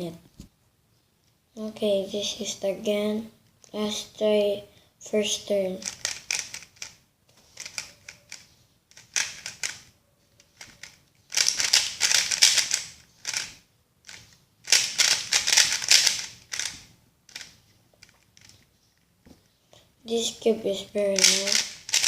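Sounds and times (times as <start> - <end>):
puzzle cube clacking: 5.8 - 19.4, 20.9 - 22.0.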